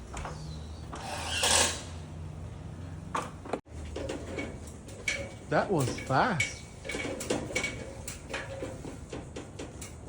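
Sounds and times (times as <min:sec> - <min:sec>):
rattling clatter: 0:03.2 - 0:10.0.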